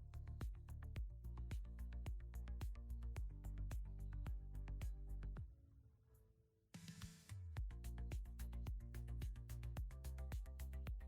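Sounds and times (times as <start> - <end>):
held bass line: 0.0 - 5.4, 7.6 - 11.0.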